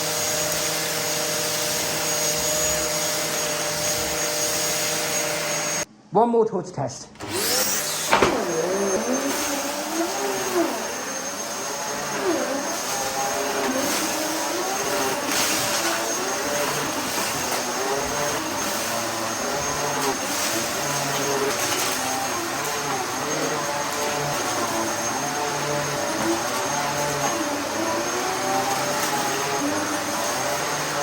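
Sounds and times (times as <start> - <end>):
vacuum cleaner motor running: 0.0 - 5.9, 7.2 - 31.0.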